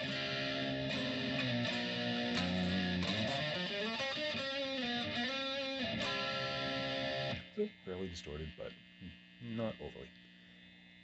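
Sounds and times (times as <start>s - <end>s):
distorted electric guitar: 0.0s - 7.8s.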